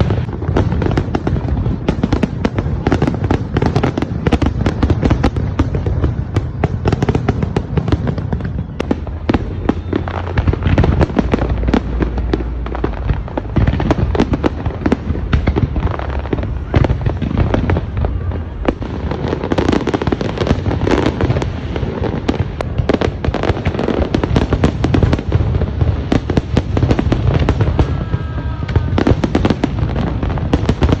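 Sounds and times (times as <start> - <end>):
fireworks bangs and crackling: 0.0 - 31.0
low booming: 8.8 - 21.3.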